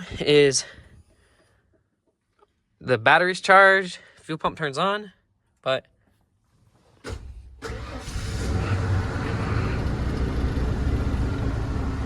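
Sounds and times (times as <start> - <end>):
truck engine cranking and idling: 7.0 - 12.0.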